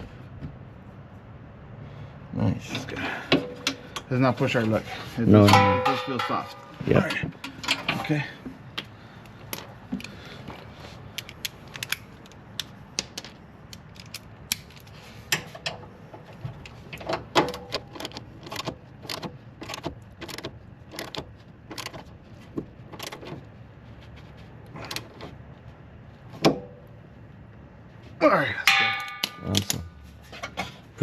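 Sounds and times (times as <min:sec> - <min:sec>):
metal tools clinking against steel: 0:05.4 - 0:08.3, 0:28.6 - 0:30.6.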